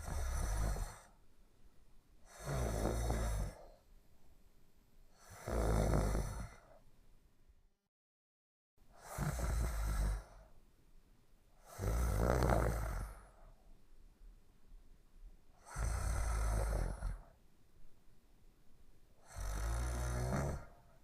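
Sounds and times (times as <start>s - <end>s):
person snoring: 0.0s - 1.2s, 2.3s - 3.8s, 5.2s - 6.7s, 9.0s - 10.4s, 11.6s - 13.4s, 15.6s - 17.3s, 19.2s - 20.9s.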